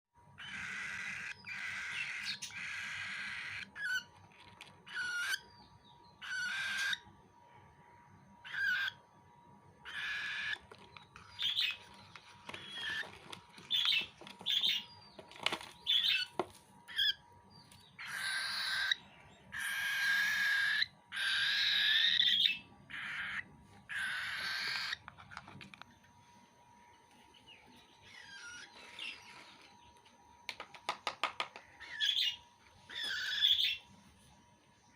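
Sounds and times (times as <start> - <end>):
baby cockatiel raspy calls: 0.4 - 4.2, 4.8 - 5.6, 6.2 - 7.1, 8.4 - 9.0, 9.8 - 12.0, 12.6 - 14.9, 15.9 - 16.3, 16.9 - 17.2, 17.9 - 25.2, 28.0 - 29.4, 31.8 - 33.8.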